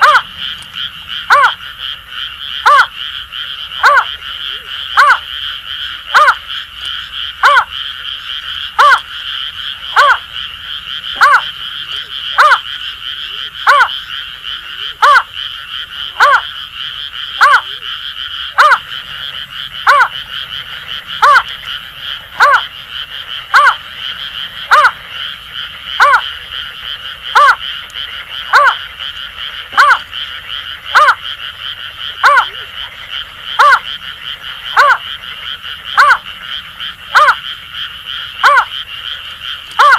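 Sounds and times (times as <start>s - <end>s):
bird hooting call: 0.0s - 0.6s, 1.2s - 1.6s, 8.8s - 9.0s, 10.0s - 10.2s, 14.8s - 15.3s, 18.6s - 18.9s, 32.2s - 32.7s
frogs chorus: 0.0s - 39.9s.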